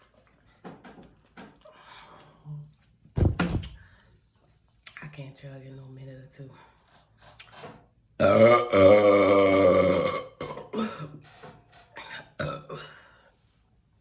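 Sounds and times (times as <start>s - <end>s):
woman burping loudly: 8.2s - 11.3s, 12.0s - 13.1s.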